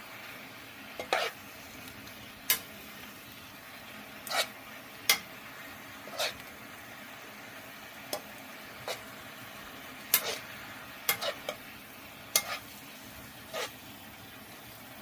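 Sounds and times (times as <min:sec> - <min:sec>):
food sizzling in a pan: 0:00.0 - 0:15.0
utensil scraping a pan: 0:01.0 - 0:01.4, 0:04.2 - 0:05.2, 0:06.0 - 0:06.4, 0:08.8 - 0:09.1, 0:10.1 - 0:10.5, 0:11.1 - 0:11.6, 0:12.3 - 0:12.8, 0:13.4 - 0:13.8.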